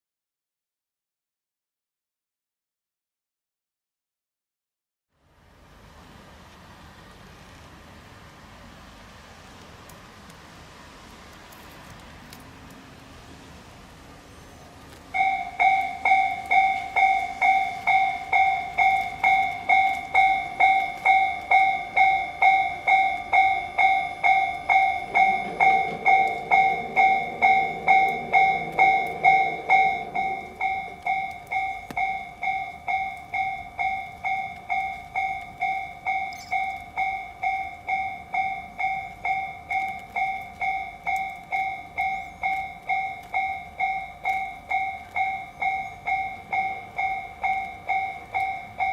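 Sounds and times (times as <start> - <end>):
low rumble: 15.2 - 35.5
level crossing bell clanging: 15.2 - 48.9.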